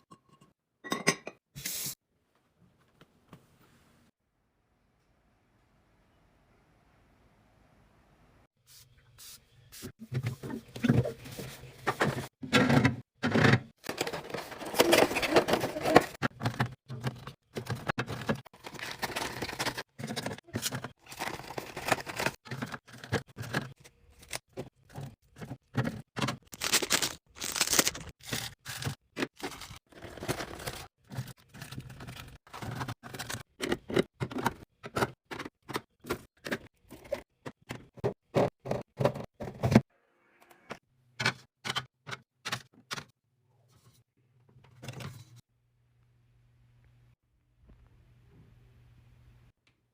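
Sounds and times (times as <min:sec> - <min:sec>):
plastic containers knocking and rustling: 0:10.0 - 0:39.9.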